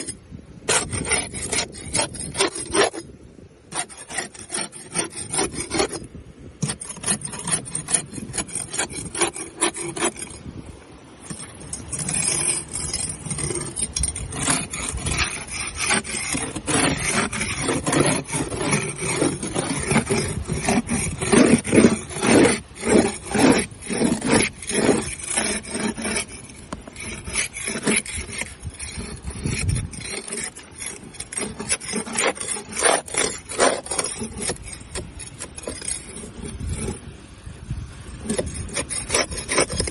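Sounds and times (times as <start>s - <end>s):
barnacles scraped off boat hull: 0.0s - 39.9s.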